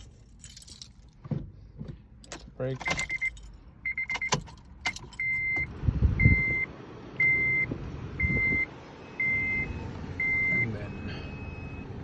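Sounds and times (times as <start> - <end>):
car warning chime beeping: 2.9 - 4.5, 5.2 - 12.0.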